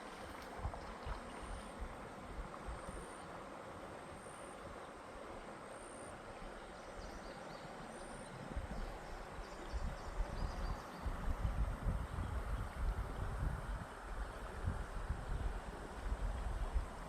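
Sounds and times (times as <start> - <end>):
wind buffeting microphone: 0.0 - 3.1, 8.3 - 17.0
creek water flowing: 0.0 - 17.0.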